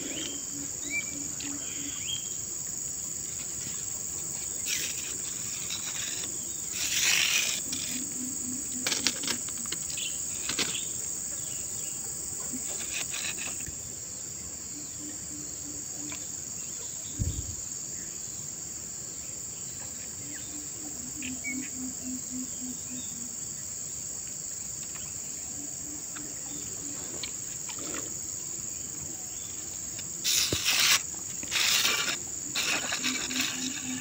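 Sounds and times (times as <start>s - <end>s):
insects chirring: 0.0s - 34.0s
low thump: 17.2s - 17.7s.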